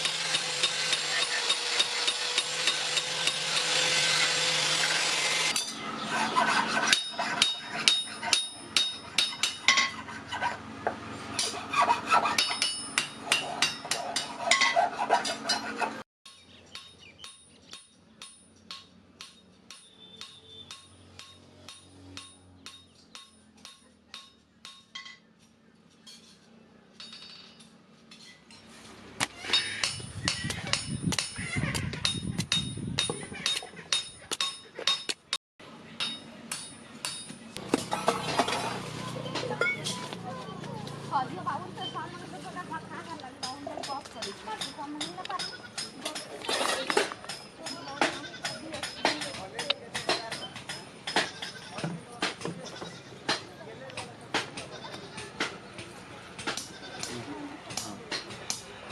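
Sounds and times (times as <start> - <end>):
hammer striking steel: 0.0 - 3.9, 6.8 - 10.0, 12.2 - 14.8, 16.3 - 25.3, 29.2 - 35.3, 36.0 - 38.6.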